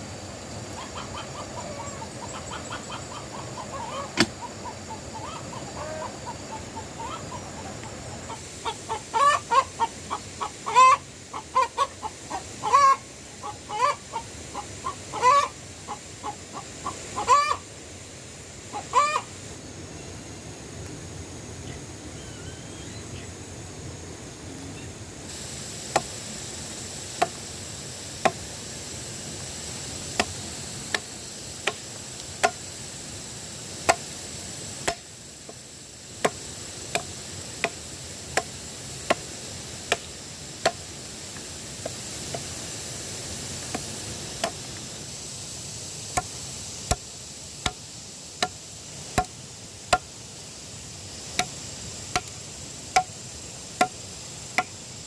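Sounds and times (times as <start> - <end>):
insect buzz: 0.0 - 55.0
sharp chopping strikes: 25.9 - 26.1, 27.2 - 27.4, 28.2 - 28.4, 30.1 - 31.8, 32.4 - 32.6, 33.9 - 34.1, 34.8 - 35.1, 36.2 - 37.8, 39.9 - 40.8, 43.7 - 44.6, 46.9 - 47.8, 49.2 - 50.1, 51.4 - 52.3.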